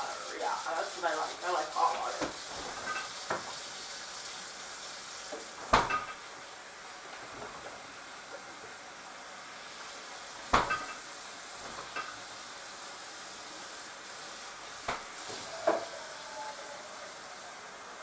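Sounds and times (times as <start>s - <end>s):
steady hiss: 0.0s - 18.0s
metal pots and pans clanking: 2.6s - 3.5s, 5.7s - 6.2s, 10.5s - 11.0s.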